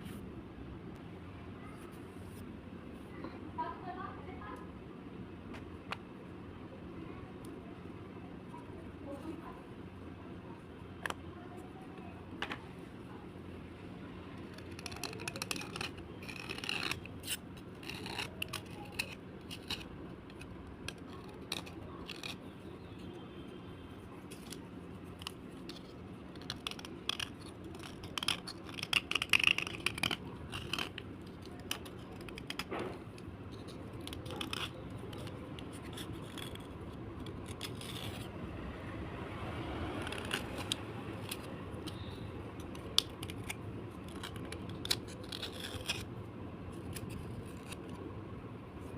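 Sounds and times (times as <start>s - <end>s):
slate scraping and crunching: 14.4s - 38.4s, 39.7s - 46.1s, 46.7s - 48.0s.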